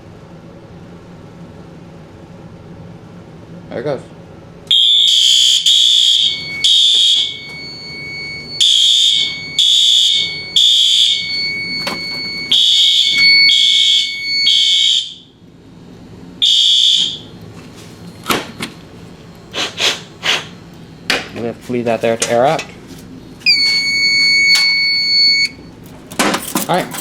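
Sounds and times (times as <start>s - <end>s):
fire alarm beeping: 4.7s - 15.4s, 16.4s - 17.4s, 23.4s - 25.8s
faint steady high tone: 6.3s - 8.6s.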